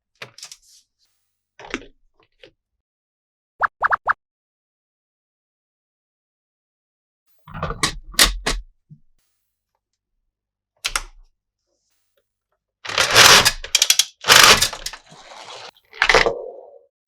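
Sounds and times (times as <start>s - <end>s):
plastic toy pieces clicking: 12.9s - 16.5s.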